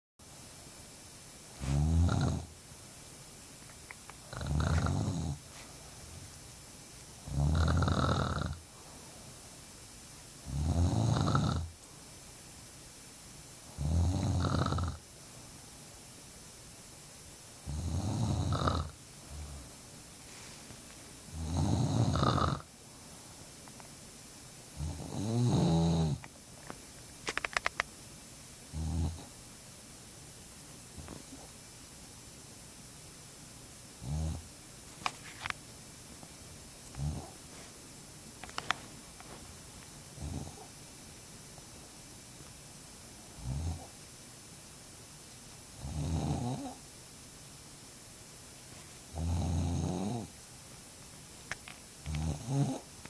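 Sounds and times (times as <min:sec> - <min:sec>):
woman snoring loudly: 0:01.6 - 0:02.5, 0:04.3 - 0:05.4, 0:07.2 - 0:08.6, 0:10.4 - 0:11.7, 0:13.7 - 0:15.0, 0:17.6 - 0:19.6, 0:21.3 - 0:22.7, 0:24.8 - 0:26.2, 0:43.4 - 0:43.9, 0:45.8 - 0:46.8, 0:49.1 - 0:50.3, 0:52.1 - 0:52.8
breathing: 0:08.7 - 0:09.4, 0:19.3 - 0:20.8.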